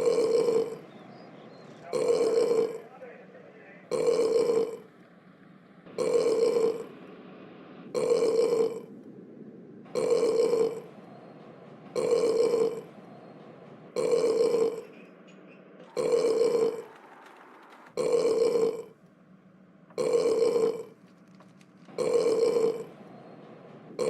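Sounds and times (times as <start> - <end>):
loud burp: 0.0 - 0.8, 1.9 - 2.9, 3.9 - 4.9, 6.0 - 6.9, 7.9 - 8.9, 9.9 - 10.9, 12.0 - 12.9, 14.0 - 15.0, 15.9 - 17.0, 18.0 - 19.0, 19.9 - 21.0, 21.9 - 23.0.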